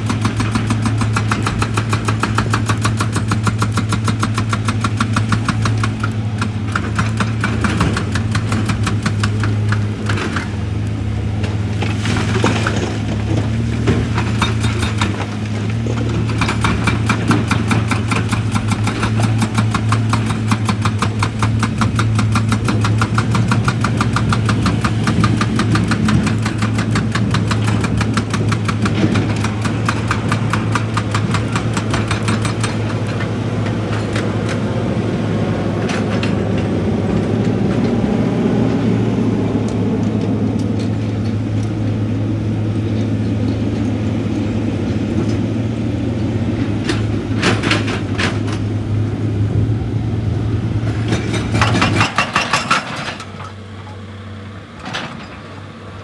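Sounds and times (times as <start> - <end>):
excavator diesel engine: 0.0 - 56.0.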